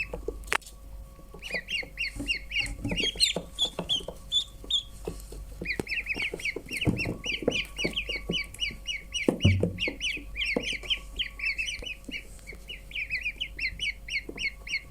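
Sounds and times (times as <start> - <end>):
ducklings peeping: 0.0 - 14.9
low knocks: 9.2 - 10.7.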